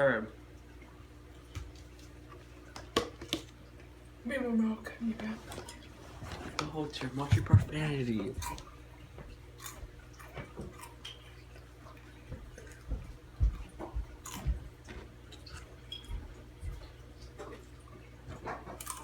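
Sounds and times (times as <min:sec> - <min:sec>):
chewing crunchy chips: 0:08.3 - 0:19.0.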